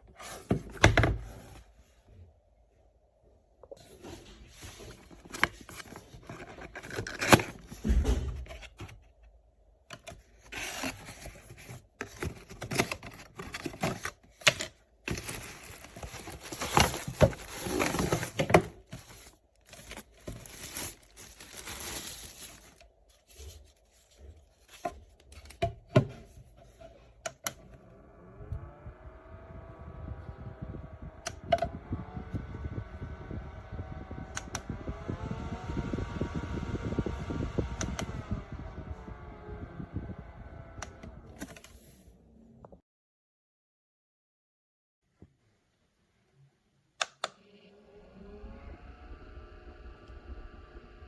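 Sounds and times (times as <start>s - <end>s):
rustling and scraping of objects: 0.0s - 2.4s, 3.6s - 9.3s, 9.9s - 27.2s.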